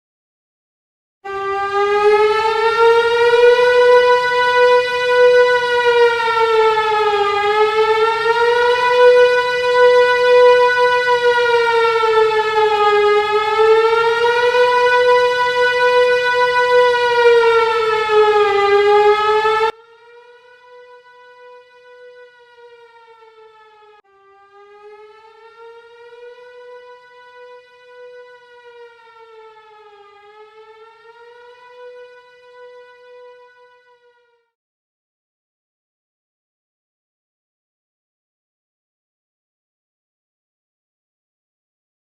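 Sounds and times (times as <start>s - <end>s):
siren alarm wailing: 1.3s - 34.5s.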